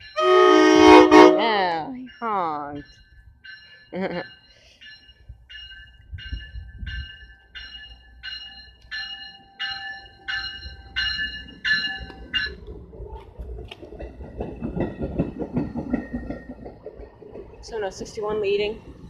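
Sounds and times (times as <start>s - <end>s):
warning bell ringing: 0.0s - 12.7s
train clattering past on rails: 2.8s - 19.0s.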